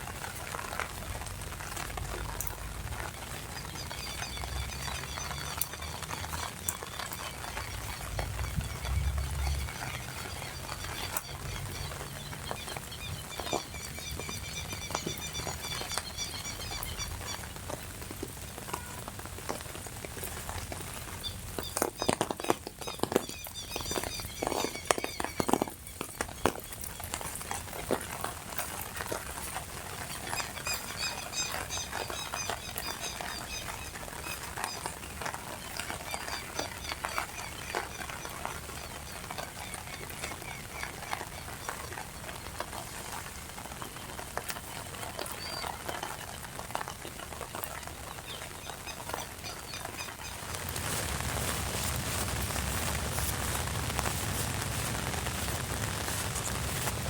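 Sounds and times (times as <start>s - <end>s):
rain hissing: 0.0s - 22.0s, 27.2s - 57.0s
raindrop clicks: 0.0s - 57.0s
small birds chirping: 0.3s - 57.0s.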